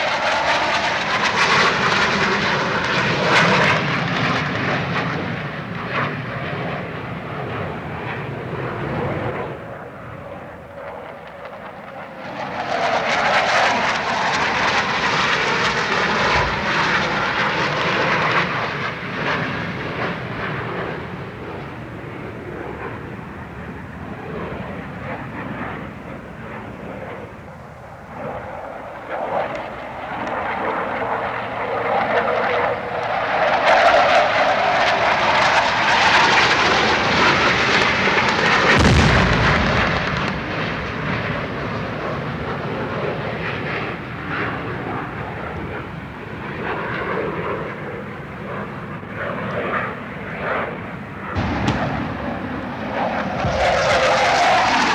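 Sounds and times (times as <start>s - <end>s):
aircraft engines overhead: 0.0s - 54.9s
deep boom: 38.8s - 41.1s, 51.4s - 53.8s.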